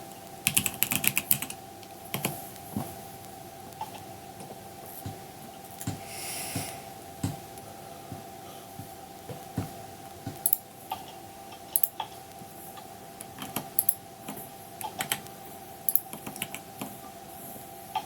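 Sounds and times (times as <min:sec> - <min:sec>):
faint hum: 0:00.0 - 0:18.0
computer keyboard typing: 0:00.4 - 0:02.4, 0:13.2 - 0:15.3, 0:15.9 - 0:16.9.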